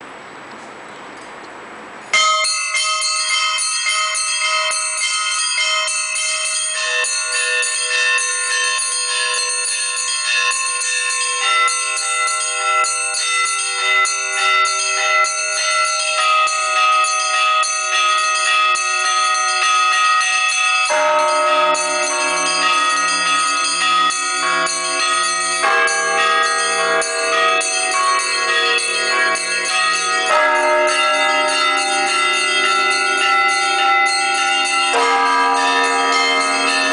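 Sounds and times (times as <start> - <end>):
small bells chiming rapidly: 2.2 - 36.9
deep bell striking: 20.8 - 36.9.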